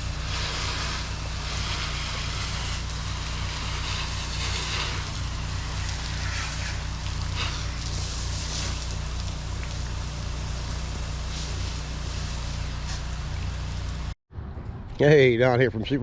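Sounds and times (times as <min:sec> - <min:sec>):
high-pressure water spray hissing: 0:00.0 - 0:14.2
pressure washer engine running: 0:00.0 - 0:14.2.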